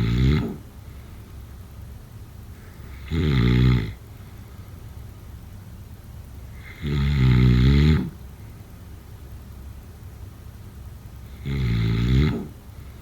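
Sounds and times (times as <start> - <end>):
person snoring: 0.0 - 0.6, 2.9 - 4.0, 6.6 - 8.2, 11.3 - 12.6
low steady background noise: 0.0 - 13.0.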